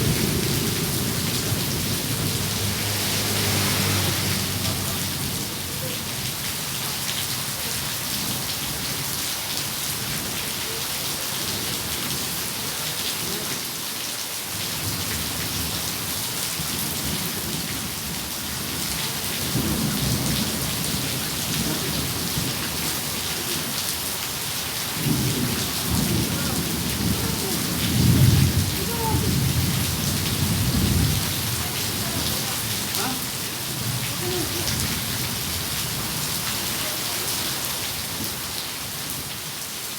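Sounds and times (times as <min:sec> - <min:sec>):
thunder rumbling: 0:00.0 - 0:05.8, 0:24.9 - 0:32.9
heavy rain pattering: 0:00.0 - 0:39.9.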